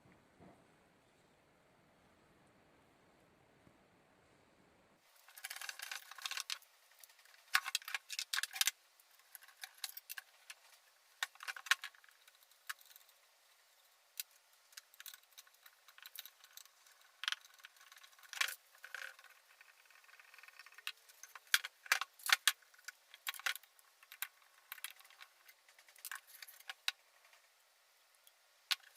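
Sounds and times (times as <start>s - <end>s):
small metal parts clinking: 5.2s - 13.1s, 13.8s - 27.2s.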